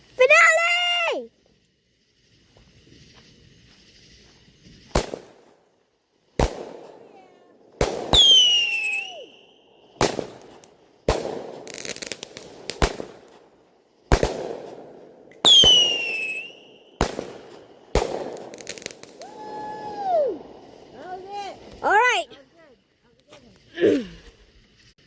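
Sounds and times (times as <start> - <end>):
fireworks crackling: 0.0 - 25.0
fireworks bangs: 2.6 - 22.2
falling firework whistle: 6.4 - 13.4, 14.1 - 21.8.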